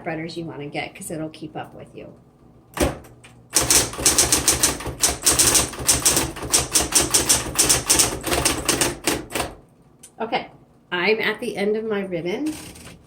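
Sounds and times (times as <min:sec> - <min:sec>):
electric typewriter typing: 0:02.8 - 0:09.6.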